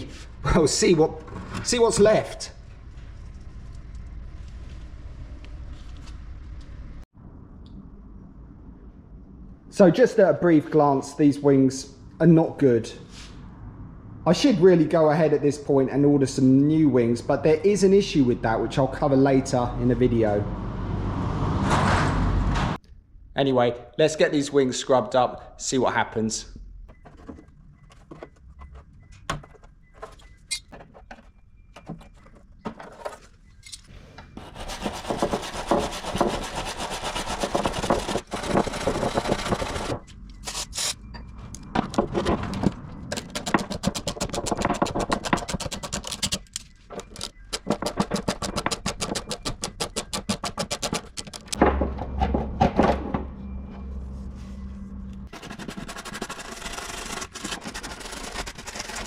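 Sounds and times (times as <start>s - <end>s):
low hum: 2.5s - 9.7s, 51.6s - 55.3s
scrubbing and scraping metal: 26.9s - 41.0s, 53.4s - 59.0s.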